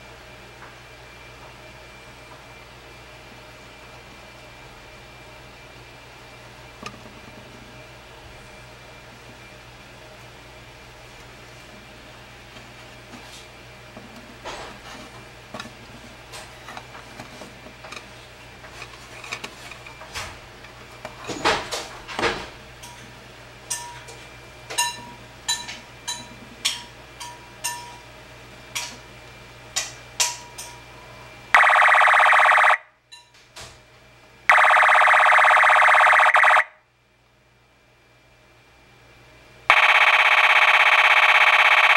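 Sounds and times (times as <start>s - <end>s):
loud buzzing alarm tones: 31.5s - 32.9s, 34.5s - 36.8s, 39.7s - 41.9s.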